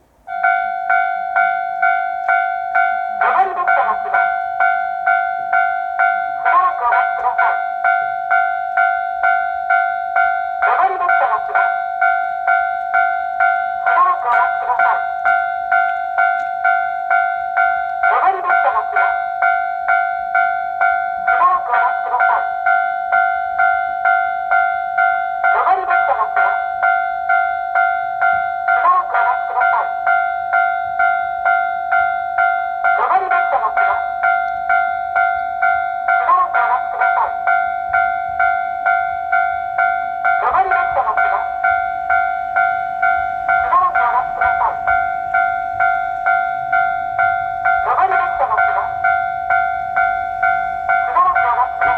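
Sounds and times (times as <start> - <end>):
level crossing electronic bell: 0.3 - 51.9
recorded woman's voice announcing: 3.2 - 4.2, 6.4 - 7.6, 10.6 - 11.7, 13.9 - 15.0, 18.1 - 19.2, 21.3 - 22.5, 25.5 - 26.6, 28.8 - 29.9, 33.0 - 34.1, 36.2 - 37.4, 40.4 - 41.6, 43.6 - 44.9, 47.8 - 49.0, 51.0 - 51.9
recorded woman's voice speaking: 25.6 - 26.6, 36.2 - 37.4, 40.4 - 41.5, 43.6 - 44.8, 47.8 - 49.0.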